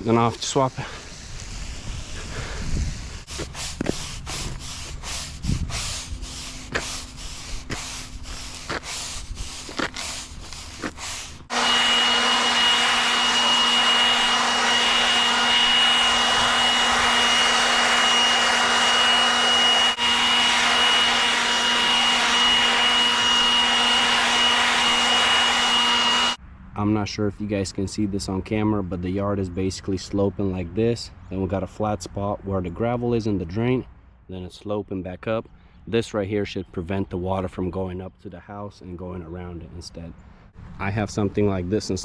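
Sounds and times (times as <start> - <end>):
leaf blower running: 0.2 - 26.4
short sharp scrapes: 3.2 - 11.5.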